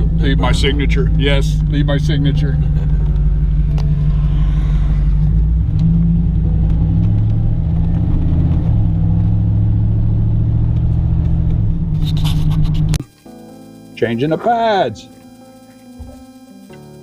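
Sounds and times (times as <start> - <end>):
vehicle engine running: 0.0 - 13.0.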